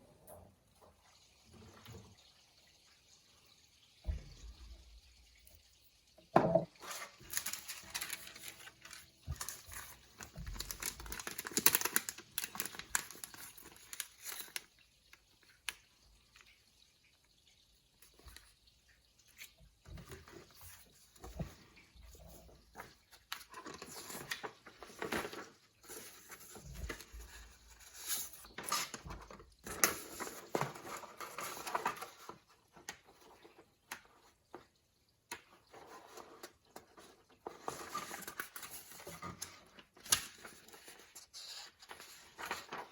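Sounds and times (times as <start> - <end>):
plastic packaging rustling: 6.7 - 14.8, 35.6 - 42.9.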